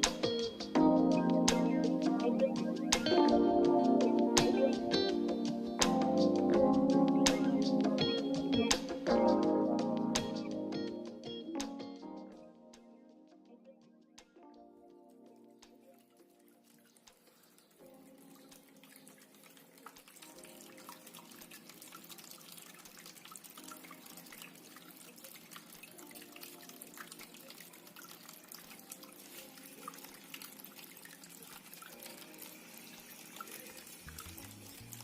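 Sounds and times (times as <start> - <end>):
fountain water trickling and dripping: 15.3 - 35.0.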